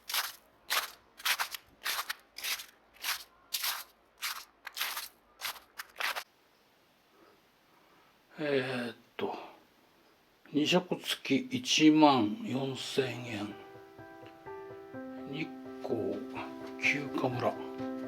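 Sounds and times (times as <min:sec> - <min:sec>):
footsteps crunching in snow: 0:00.0 - 0:06.2.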